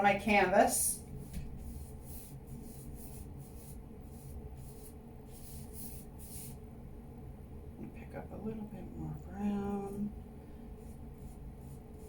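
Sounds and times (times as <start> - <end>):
low steady hum: 0.0 - 12.0
paintbrush stroking and dabbing: 0.9 - 6.6, 10.7 - 12.0.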